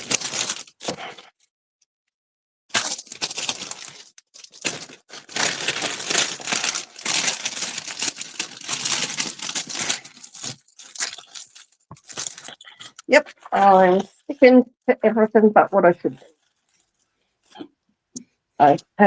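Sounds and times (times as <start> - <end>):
plastic bags crinkling: 0.0 - 1.3, 2.7 - 14.4, 16.2 - 17.6.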